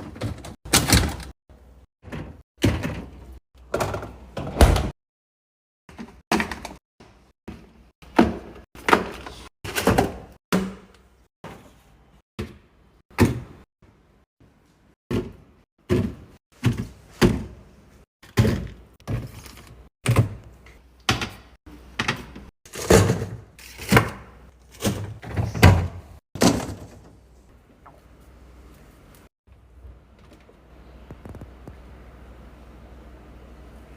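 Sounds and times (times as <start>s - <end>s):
fridge drawers and doors shutting: 0.0s - 1.4s, 2.0s - 4.9s, 21.1s - 27.2s.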